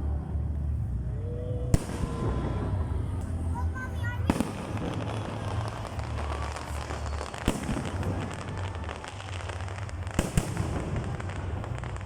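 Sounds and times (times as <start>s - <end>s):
firework bangs: 4.1s - 12.0s
crackle of small firework pops: 4.3s - 12.0s.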